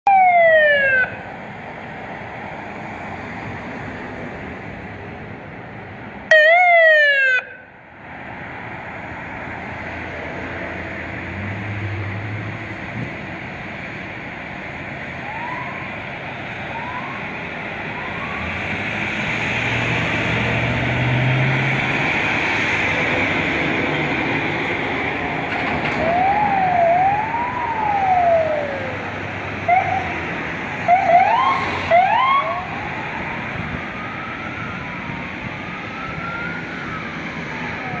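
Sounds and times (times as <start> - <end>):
siren wailing: 0.1 - 1.2, 6.3 - 7.8, 15.2 - 16.0, 16.6 - 18.8, 26.0 - 30.2, 30.8 - 38.0
traffic noise: 0.1 - 38.0.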